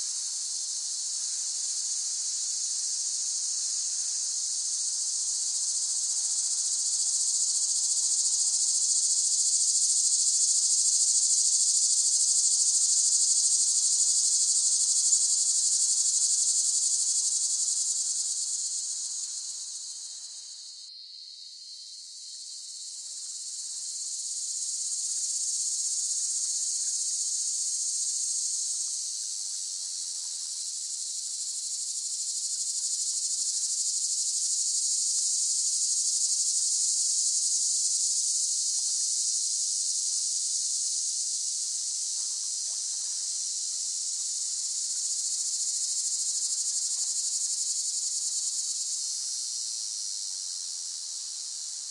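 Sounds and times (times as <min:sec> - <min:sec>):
cicadas calling: 0:44.8 - 0:48.0.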